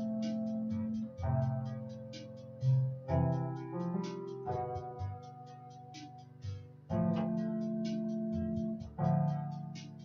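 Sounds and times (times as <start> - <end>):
high ticking beat: 0.0 - 10.0
keyboard chords: 0.0 - 10.0
bass line: 6.9 - 10.0.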